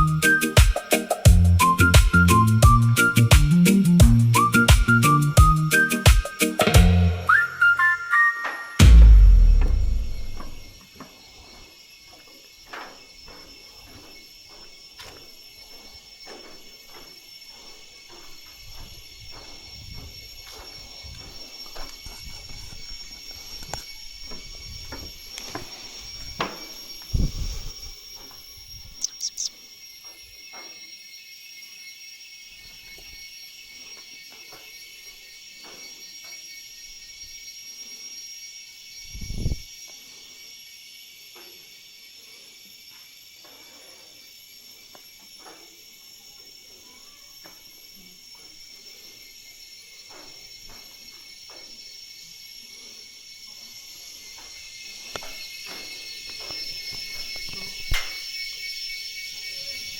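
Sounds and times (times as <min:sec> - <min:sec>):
high chirps: 0:00.0 - 0:10.8, 0:29.0 - 0:29.6
high insect drone: 0:00.0 - 0:59.9
knocks and thumps: 0:08.8 - 0:10.8.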